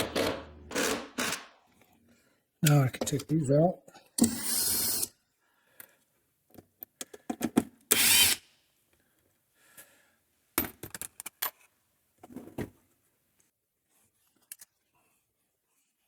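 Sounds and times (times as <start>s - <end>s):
cordless drill running: 7.9s - 8.4s.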